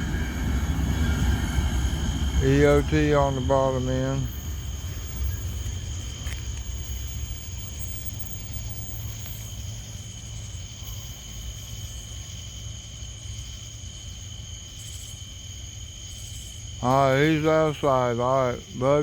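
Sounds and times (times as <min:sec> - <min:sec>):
low rumble: 0:00.0 - 0:08.5
crickets chirring: 0:00.0 - 0:19.0.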